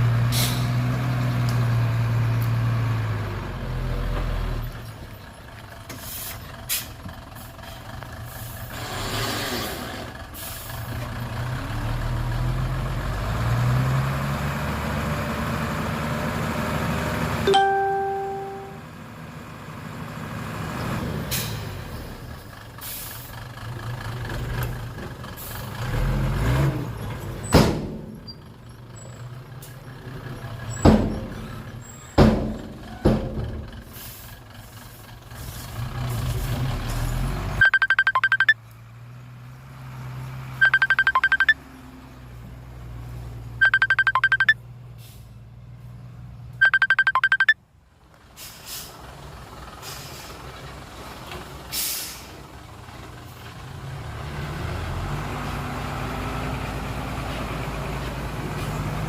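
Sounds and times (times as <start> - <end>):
dump truck engine running: 0.0 - 59.0
reversing alarm beeping: 37.6 - 38.6, 40.6 - 41.6, 43.6 - 44.6, 46.6 - 47.6.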